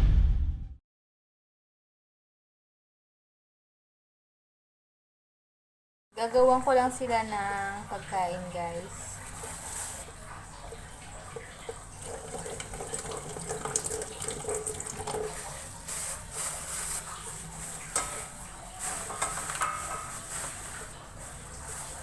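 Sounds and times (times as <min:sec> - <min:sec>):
tap water running into sink: 0:08.9 - 0:22.0.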